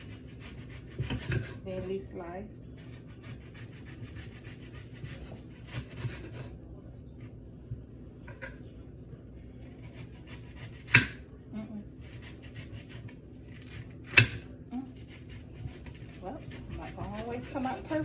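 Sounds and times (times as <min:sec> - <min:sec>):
knife slicing onion: 0:00.0 - 0:01.6, 0:02.8 - 0:06.5, 0:09.6 - 0:11.2, 0:12.0 - 0:18.0.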